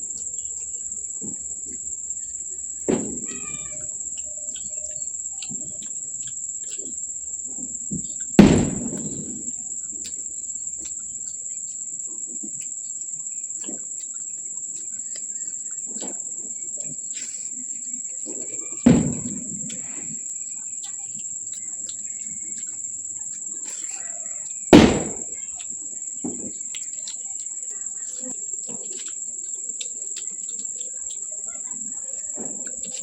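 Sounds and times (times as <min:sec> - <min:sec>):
person chewing food: 0:00.0 - 0:08.4, 0:09.5 - 0:33.0
crickets droning: 0:00.0 - 0:33.0
sharp knock: 0:08.4 - 0:09.1, 0:24.7 - 0:25.3.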